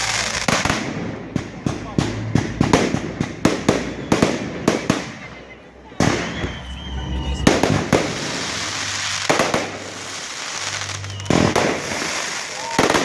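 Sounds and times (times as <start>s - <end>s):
firework crackling: 0.0s - 13.0s
firework whistle: 2.1s - 13.0s
firework shells bursting: 7.5s - 13.0s.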